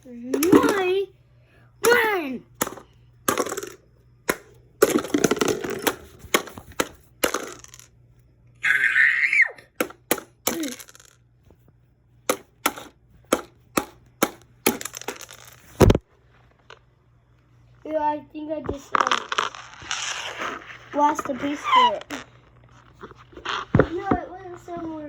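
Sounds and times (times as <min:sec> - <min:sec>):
sharp plastic knocks: 0:02.6 - 0:07.6, 0:09.8 - 0:10.7, 0:12.2 - 0:15.2
plastic toy pieces clattering: 0:04.8 - 0:07.9, 0:10.5 - 0:11.2, 0:14.7 - 0:16.0, 0:18.8 - 0:20.4.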